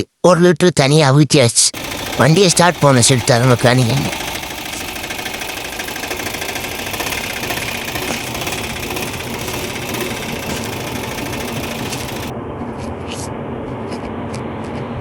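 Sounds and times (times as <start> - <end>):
engine idling: 1.8 - 12.3.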